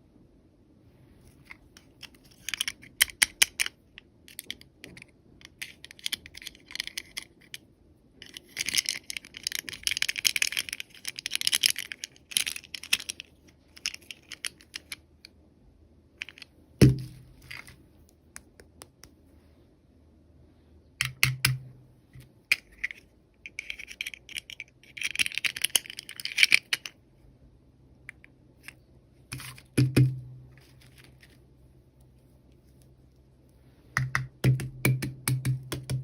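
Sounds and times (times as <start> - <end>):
plastic packaging clicks and crinkling: 8.2 - 15.0.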